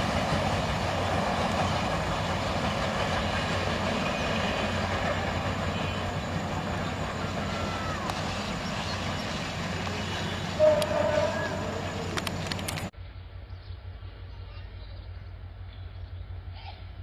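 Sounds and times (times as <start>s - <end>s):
train rumbling on rails: 0.0s - 13.0s
sharp clicks: 12.0s - 12.9s.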